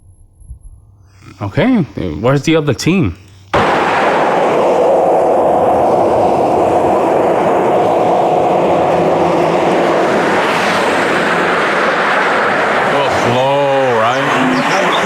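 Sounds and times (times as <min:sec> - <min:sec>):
heavy construction machinery drone: 0:03.6 - 0:15.0.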